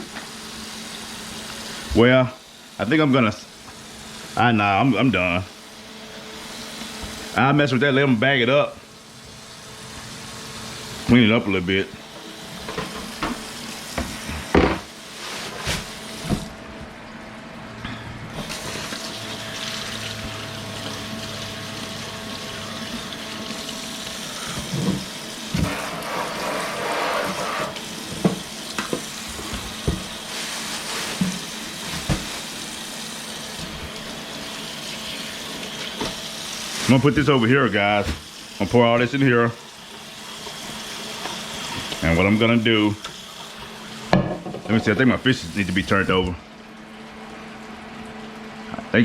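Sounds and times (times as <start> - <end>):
fish sizzling in hot oil: 0.0 - 2.8, 5.5 - 7.4, 12.0 - 16.4, 18.3 - 37.5, 38.2 - 44.2
water running at sink: 0.0 - 49.0.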